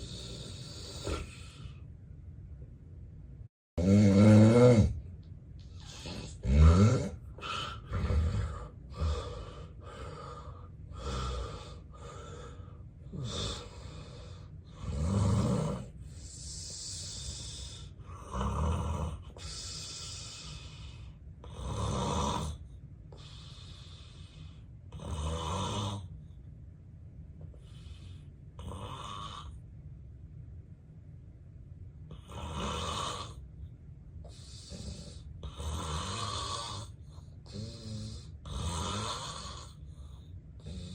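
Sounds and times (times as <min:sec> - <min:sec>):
man snoring heavily: 0:00.0 - 0:01.3, 0:03.8 - 0:05.0, 0:05.8 - 0:12.5, 0:13.1 - 0:20.5, 0:21.4 - 0:22.6, 0:24.9 - 0:26.1, 0:28.6 - 0:29.5, 0:32.1 - 0:33.4, 0:34.5 - 0:39.8, 0:40.6 - 0:40.9.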